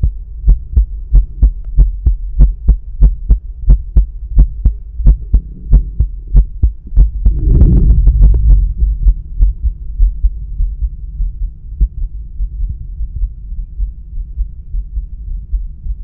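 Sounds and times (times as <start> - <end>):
heartbeat thumps: 0.0 - 16.0
low hum: 0.0 - 16.0
brief rushing noise: 7.3 - 9.0.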